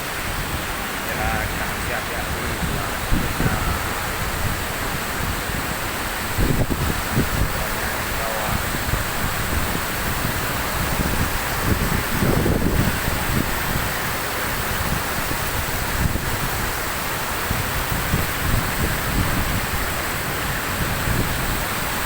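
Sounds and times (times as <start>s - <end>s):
waterfall rushing: 0.0s - 22.0s
wind rumbling on microphone: 0.0s - 22.0s.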